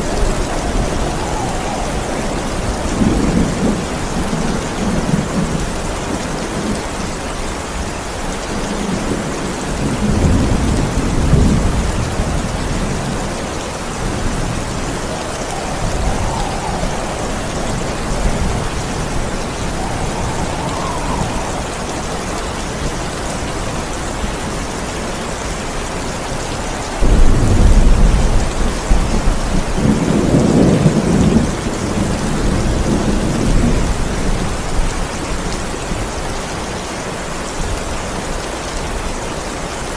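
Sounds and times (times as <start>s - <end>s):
loud thunderclap: 0.0s - 5.7s, 27.0s - 33.8s
low thunder rumble: 0.0s - 7.2s, 8.6s - 24.7s, 27.0s - 35.2s
heavy rain: 0.0s - 39.9s.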